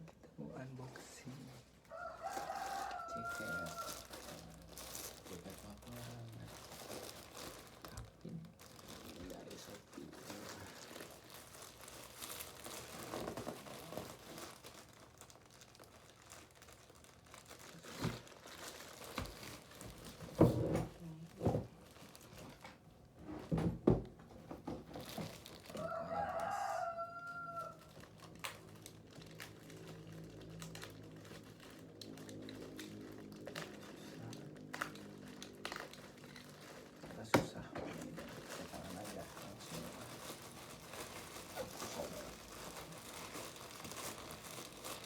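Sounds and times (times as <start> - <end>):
plastic packaging rustling: 0.9 - 45.0
rooster crowing: 1.9 - 4.2, 25.7 - 27.9.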